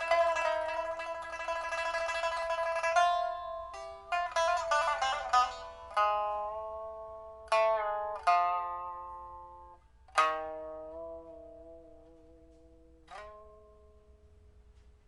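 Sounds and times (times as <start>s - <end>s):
plucked pipa chords: 0.0s - 14.9s.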